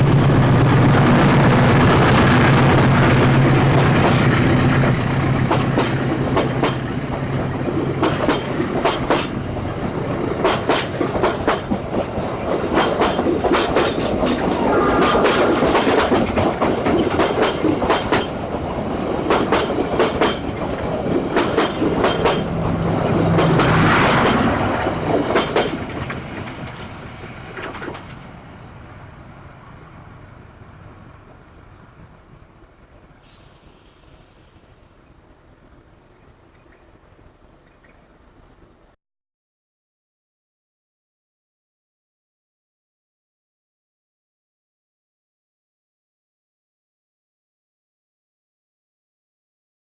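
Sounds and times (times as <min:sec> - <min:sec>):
locomotive engine hum: 0:00.0 - 0:39.0
train wheels clattering on rails: 0:01.4 - 0:28.3.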